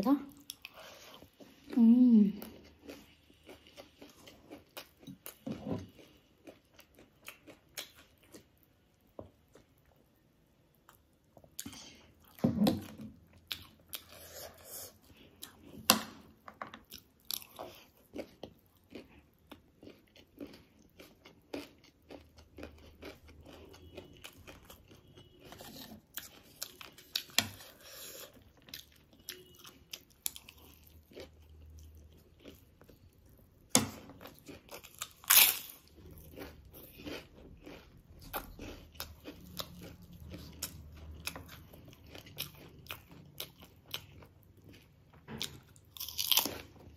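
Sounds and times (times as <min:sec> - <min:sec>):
crunching and chewing snack: 0:00.4 - 0:10.0, 0:16.8 - 0:46.9.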